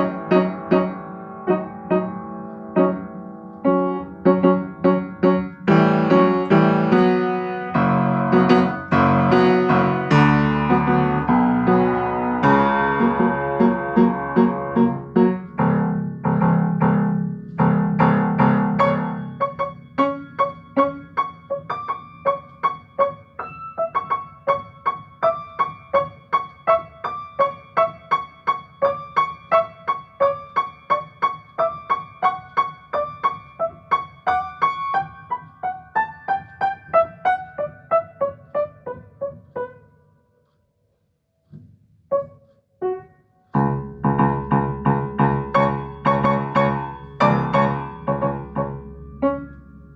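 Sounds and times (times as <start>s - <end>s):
solo piano: 0.0s - 40.6s, 41.4s - 49.9s.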